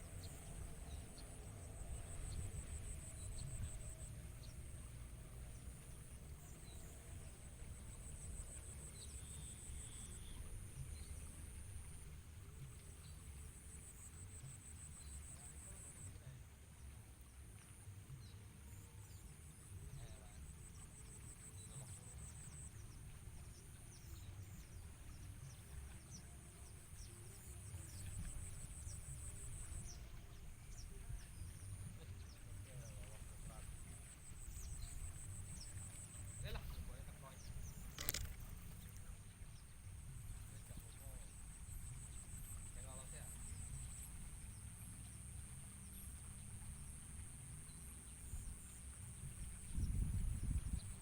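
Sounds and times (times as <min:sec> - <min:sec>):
insect trill: 0:33.3 - 0:39.1.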